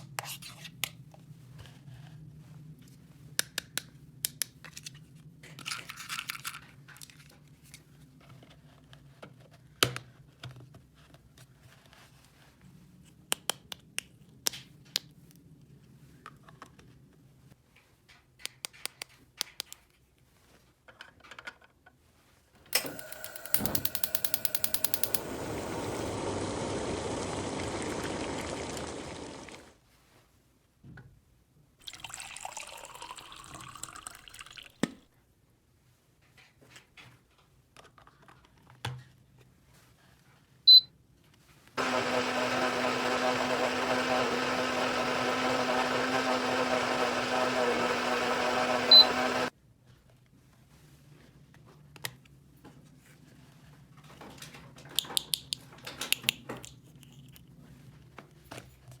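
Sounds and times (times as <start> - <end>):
loud click: 22.8 - 26.1
fast even ticking: 23.0 - 25.9
toy faucet pouring water: 23.5 - 29.7, 31.8 - 34.8.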